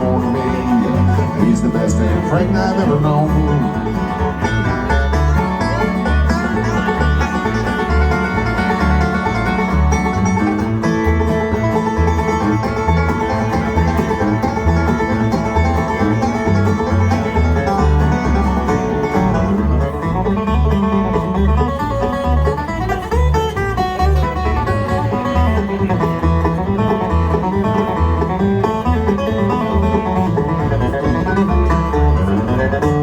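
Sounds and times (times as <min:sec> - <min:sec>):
banjo picking: 0:00.0 - 0:33.0
bluegrass band playing: 0:00.0 - 0:33.0
bouncing bass line: 0:00.0 - 0:33.0
guitar picking: 0:00.0 - 0:33.0.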